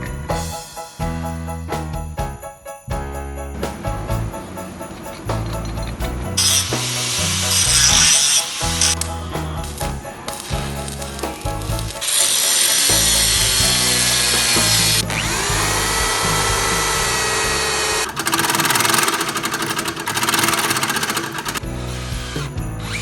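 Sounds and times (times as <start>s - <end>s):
background music: 0.0s - 23.0s
rapid rattling pulses: 3.0s - 23.0s
power drill whirring and grinding: 6.4s - 9.0s, 12.0s - 23.0s.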